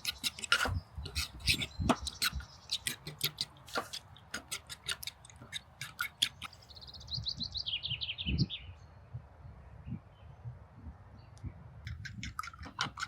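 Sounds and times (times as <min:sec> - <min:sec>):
songbird singing: 0:00.0 - 0:09.1.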